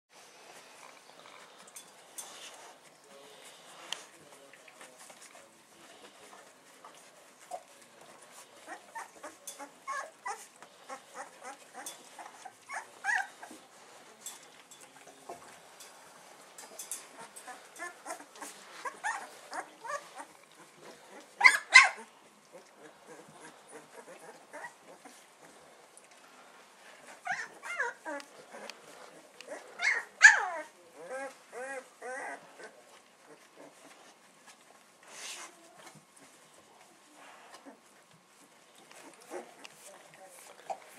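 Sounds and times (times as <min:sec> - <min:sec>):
puppies whimpering and squeaking: 0:06.1 - 0:25.9, 0:26.9 - 0:34.6, 0:37.3 - 0:40.9.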